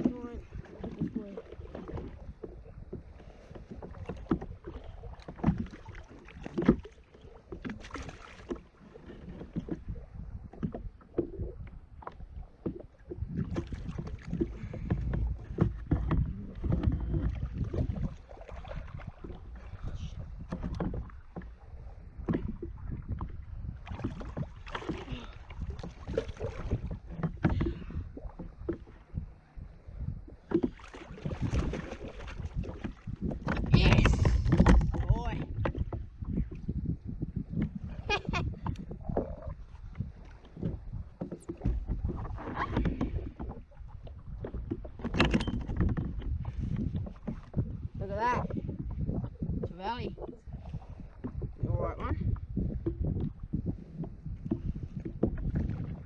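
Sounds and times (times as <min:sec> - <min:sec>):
water splashing around kayak: 0:00.0 - 0:56.0
wind rumbling on microphone: 0:00.0 - 0:56.0
gear knocking on hull: 0:12.1 - 0:29.4, 0:30.3 - 0:50.4, 0:51.2 - 0:56.0.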